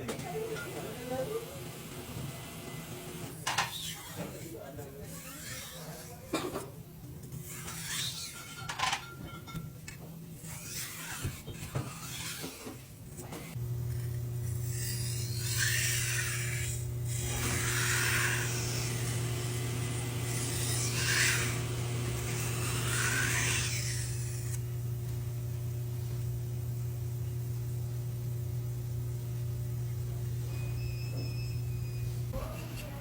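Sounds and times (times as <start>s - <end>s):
knife rasping across sharpener: 3.7s - 6.3s, 7.4s - 8.7s, 10.4s - 18.7s.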